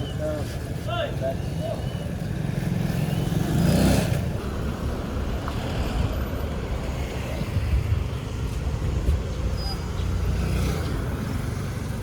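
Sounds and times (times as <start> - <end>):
wind rushing over microphone: 3.3 - 9.6.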